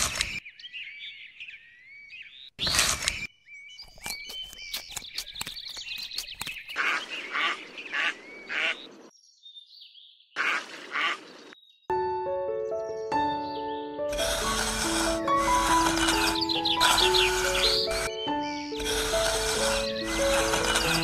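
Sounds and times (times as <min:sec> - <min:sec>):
small birds chirping: 0:00.0 - 0:21.0
sharp clicks: 0:02.6 - 0:03.3
ducks quacking: 0:06.8 - 0:09.0, 0:10.4 - 0:11.5, 0:14.2 - 0:18.1.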